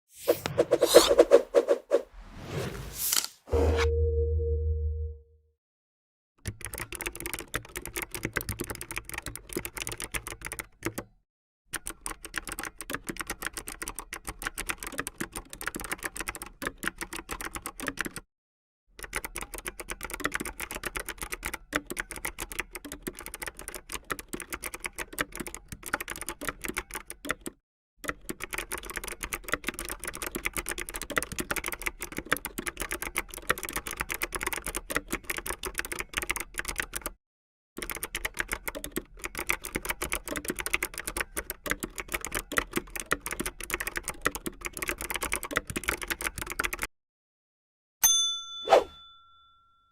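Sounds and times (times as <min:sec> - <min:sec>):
fast keyboard typing: 0:06.5 - 0:11.1, 0:11.8 - 0:18.2, 0:19.0 - 0:37.2, 0:37.8 - 0:46.9.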